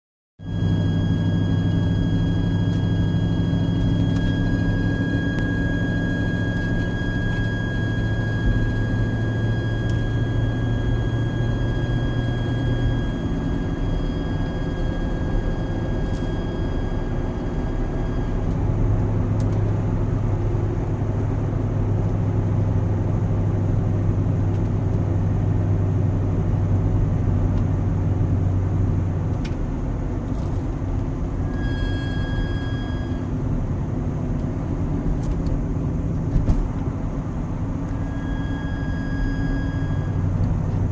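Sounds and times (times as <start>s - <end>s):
high-pitched squeal: 0.4s - 18.5s, 31.4s - 33.3s, 38.0s - 40.4s
car driving drone: 0.4s - 40.9s.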